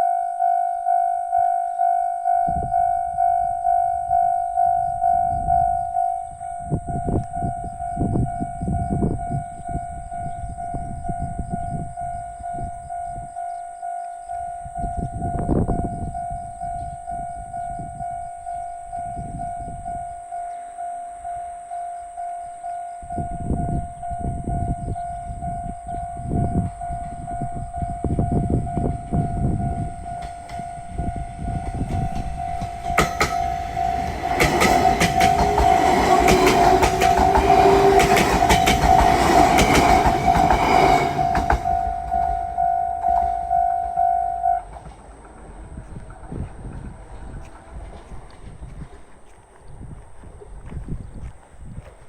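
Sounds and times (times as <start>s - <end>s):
level-crossing warning bell: 0.0s - 48.2s
low rumbling: 23.1s - 49.0s
train wheels clattering: 29.1s - 49.2s.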